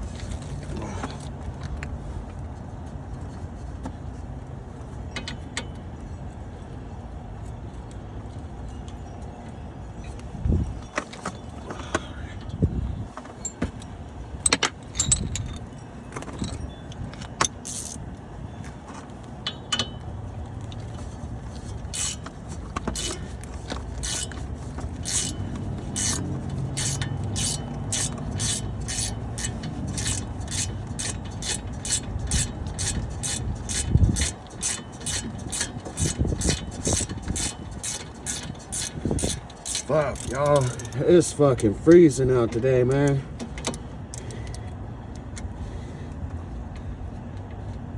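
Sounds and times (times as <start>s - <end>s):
metal clinks: 13.3s - 18.7s, 21.9s - 41.4s
ratchet wrench clicking: 17.2s - 18.0s, 21.6s - 41.4s, 43.1s - 44.6s.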